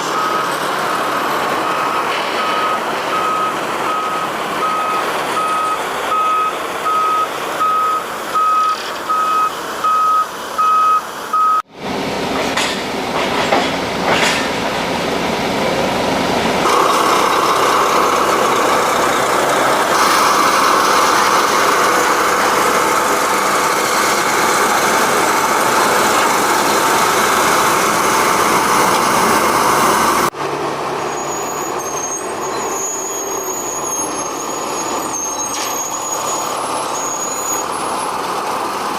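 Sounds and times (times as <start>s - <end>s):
reversing alarm beeping: 0.0s - 11.6s
heavy machine engine drone: 0.0s - 38.9s
machinery clanks: 12.2s - 15.0s, 16.6s - 30.3s.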